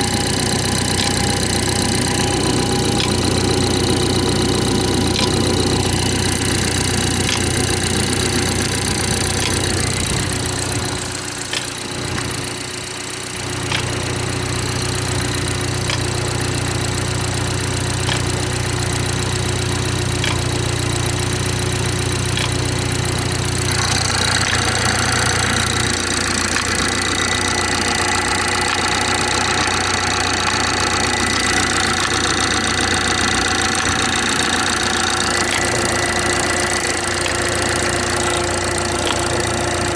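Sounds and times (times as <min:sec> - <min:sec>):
car engine cold start: 0:00.0 - 0:39.9
faint clicks: 0:13.7 - 0:14.0.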